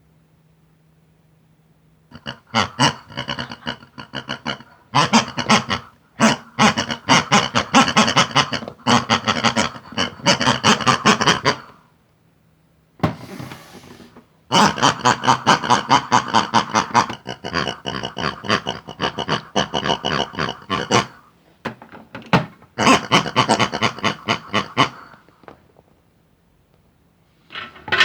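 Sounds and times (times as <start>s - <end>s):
squeaky gibberish chattering: 2.1s - 11.8s, 14.5s - 21.3s, 22.8s - 25.4s.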